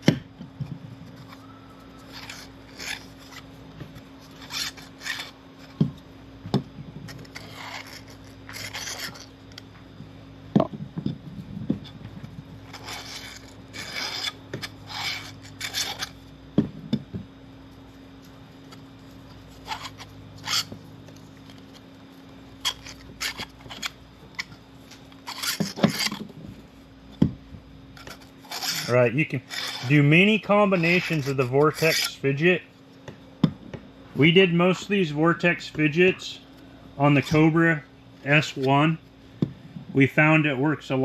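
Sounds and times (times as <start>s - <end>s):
plastic parts scraping: 7.1s - 9.3s, 12.7s - 16.2s, 19.6s - 20.8s, 22.6s - 26.5s, 28.0s - 32.2s.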